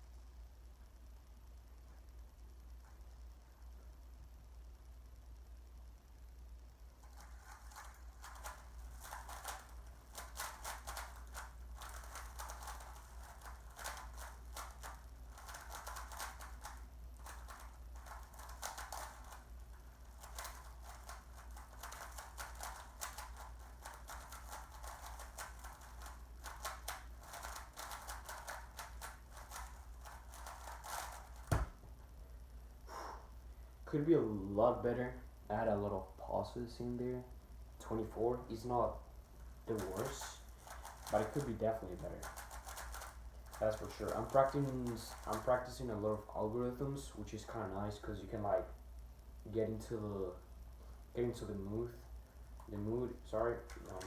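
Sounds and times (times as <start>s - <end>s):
plastic puzzle cube clicking: 7.2s - 19.5s, 20.1s - 31.6s, 39.8s - 41.5s, 42.1s - 45.5s.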